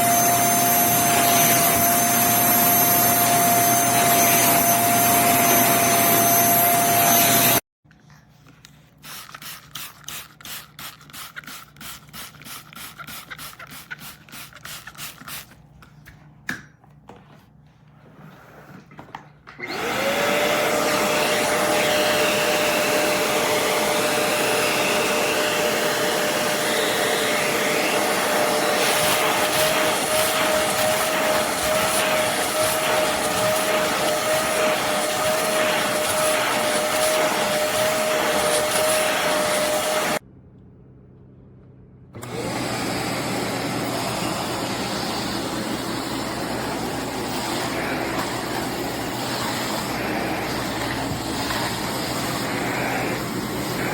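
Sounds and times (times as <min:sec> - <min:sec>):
vacuum cleaner motor whine: 0:00.0 - 0:07.6, 0:19.5 - 0:40.2, 0:42.2 - 0:53.9
vacuum suction rush: 0:19.7 - 0:40.2, 0:42.2 - 0:53.9.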